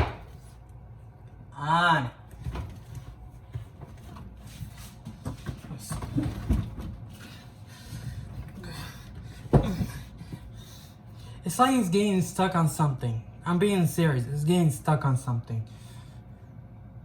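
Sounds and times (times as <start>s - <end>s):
refrigerator being shoved: 0.0s - 0.5s.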